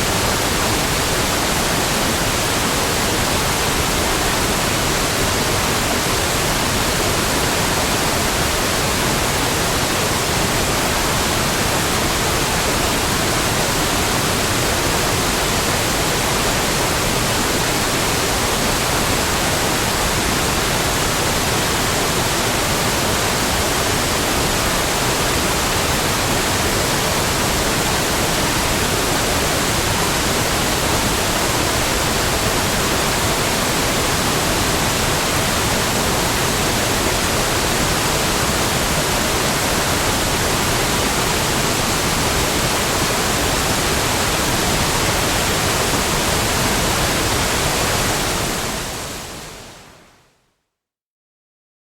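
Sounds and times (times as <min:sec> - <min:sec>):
waterfall rushing: 0:00.0 - 0:49.7.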